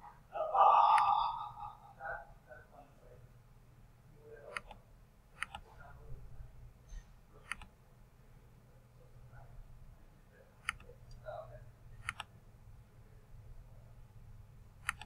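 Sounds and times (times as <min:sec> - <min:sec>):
faint low hum: 0:00.0 - 0:15.0
computer mouse clicking: 0:04.5 - 0:04.8, 0:05.4 - 0:05.6, 0:07.4 - 0:07.7, 0:10.6 - 0:11.2, 0:12.0 - 0:12.3, 0:14.8 - 0:15.0.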